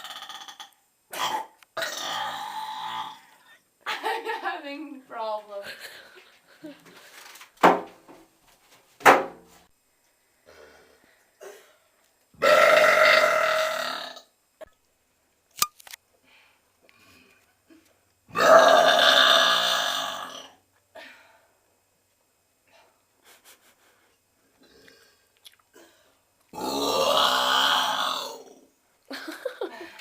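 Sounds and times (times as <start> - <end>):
woman burping: 0.0 - 3.4, 18.4 - 20.6.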